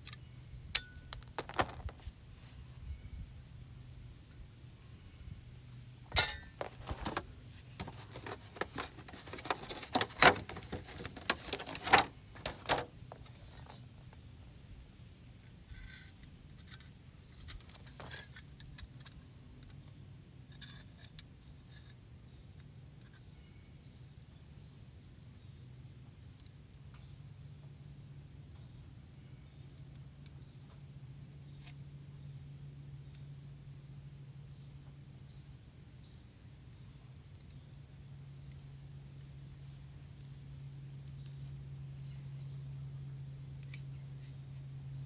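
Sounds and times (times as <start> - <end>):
faint low hum: 0.0 - 45.0
scrap metal clinking: 6.1 - 13.8.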